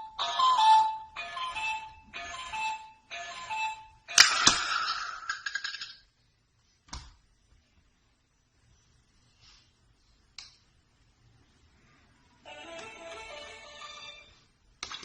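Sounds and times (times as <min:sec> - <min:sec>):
alarm clock beeping: 0:00.0 - 0:04.3.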